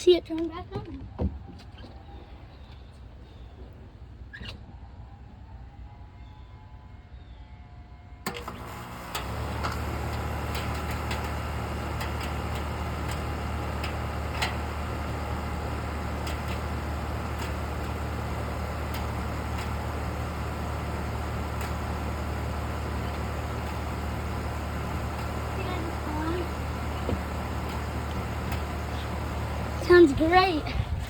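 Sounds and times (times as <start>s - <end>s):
air conditioner humming: 8.4s - 31.0s.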